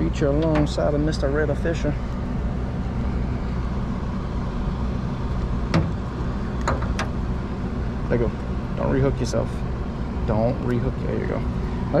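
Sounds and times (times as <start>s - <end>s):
low motor hum: 0.0s - 12.0s.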